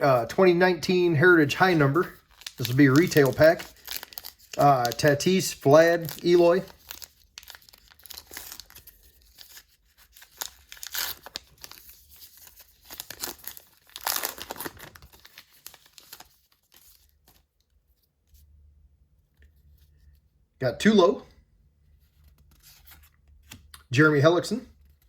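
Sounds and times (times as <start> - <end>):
wrapper tearing and crinkling: 1.6 - 17.4.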